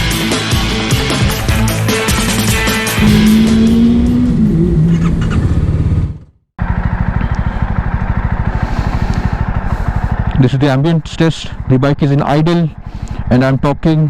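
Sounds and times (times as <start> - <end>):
motorcycle engine idling: 3.0 - 10.3.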